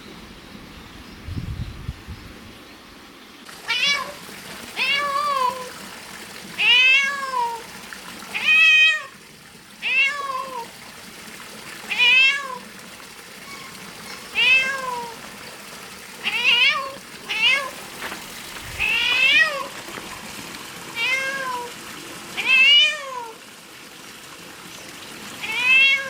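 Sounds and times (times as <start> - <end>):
cat meowing: 3.6 - 4.2, 4.8 - 5.7, 6.6 - 7.6, 9.8 - 10.6, 11.9 - 12.6, 13.5 - 15.2, 16.2 - 17.8, 18.8 - 19.7, 21.0 - 21.7, 22.4 - 23.4, 25.4 - 26.0.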